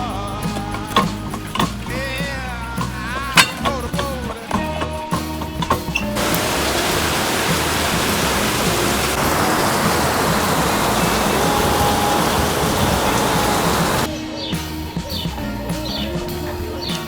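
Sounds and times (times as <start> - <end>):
faint background music: 0.0 - 17.0
loud steady rushing noise: 6.2 - 14.1.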